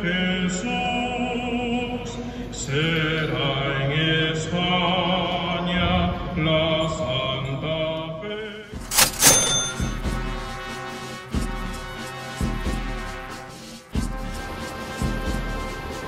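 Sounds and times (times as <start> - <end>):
slow sung chant: 0.0 - 8.8
loud crashing hits: 5.7 - 7.5
music: 8.6 - 16.0.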